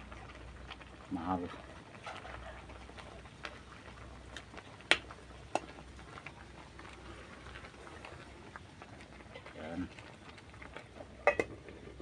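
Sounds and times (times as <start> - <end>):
faint simmering boil: 0.0 - 12.0
utensil knocking against a pot: 11.2 - 11.5.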